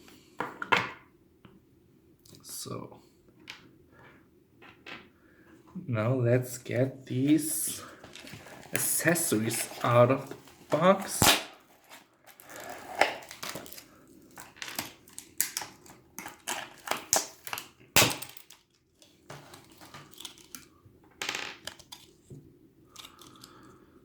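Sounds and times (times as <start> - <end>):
plastic clicks and crinkles: 11.9 - 20.7, 21.6 - 23.7.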